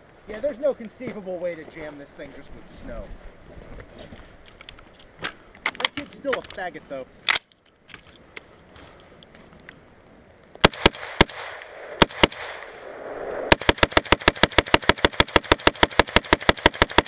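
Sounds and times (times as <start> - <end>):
gunshots: 10.6 - 17.0.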